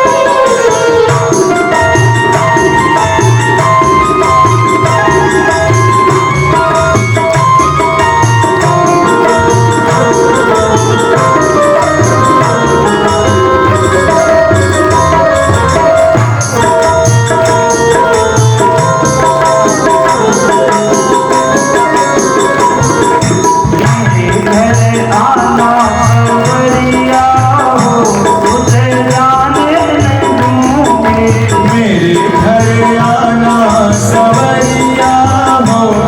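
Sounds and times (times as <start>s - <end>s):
jingling hand cymbals: 0.0s - 36.0s
keyboard chords: 0.0s - 36.0s
tabla: 0.0s - 36.0s.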